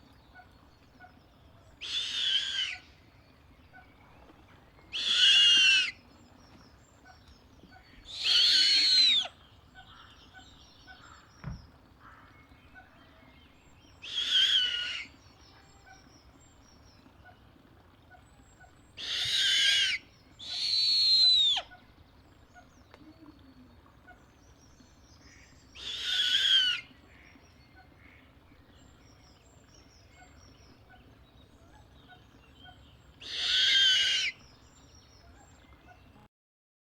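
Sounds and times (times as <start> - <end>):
owl harsh high-pitched calls: 1.8 - 2.9, 4.9 - 6.0, 8.0 - 9.9, 14.0 - 15.2, 19.0 - 21.8, 25.3 - 26.9, 33.2 - 34.4.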